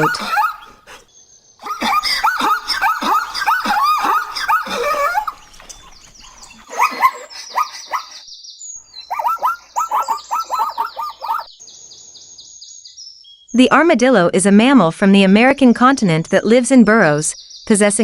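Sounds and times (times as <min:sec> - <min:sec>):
zebra barking yelps: 0:00.0 - 0:08.2, 0:08.8 - 0:11.5
high bird chirps: 0:00.0 - 0:13.6.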